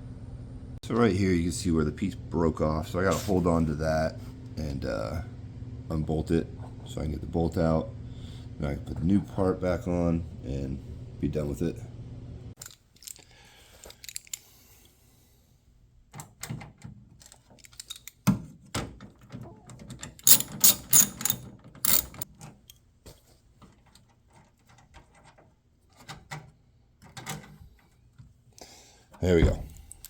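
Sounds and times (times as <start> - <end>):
metal hardware clicking and clinking: 12.6 - 14.5, 17.2 - 18.2, 19.8 - 22.8, 29.6 - 30.0.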